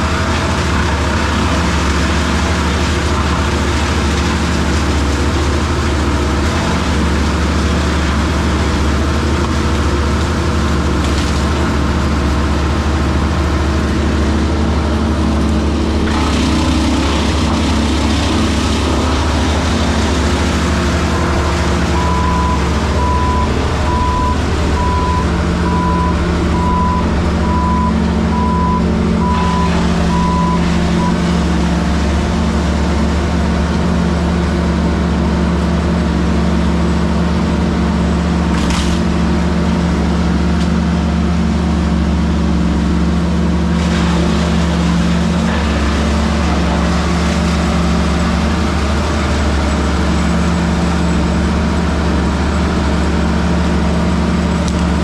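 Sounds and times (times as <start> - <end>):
heavy machinery engine running: 0.0 - 55.0
backup alarm beeping: 21.8 - 31.2.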